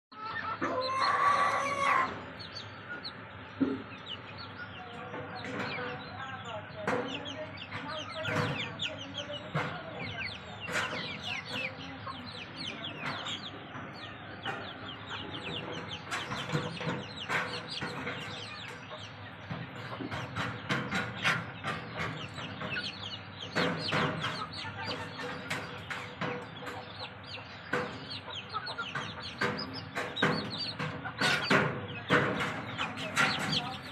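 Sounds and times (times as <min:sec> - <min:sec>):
chicks peeping: 0:00.1 - 0:33.9.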